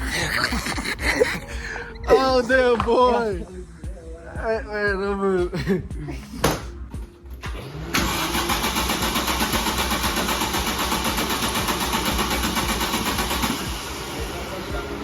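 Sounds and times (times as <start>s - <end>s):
car engine starting and running: 7.2s - 15.0s.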